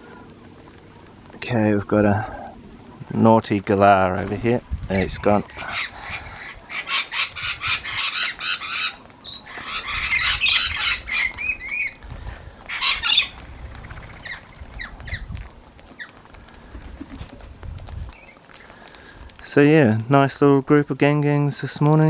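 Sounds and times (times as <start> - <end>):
cockatoos squawking: 4.2 - 17.5.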